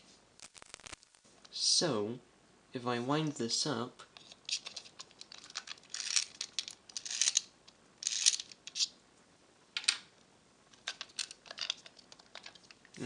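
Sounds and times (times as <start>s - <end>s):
wind-up key ratchet clicks: 8.0s - 8.9s.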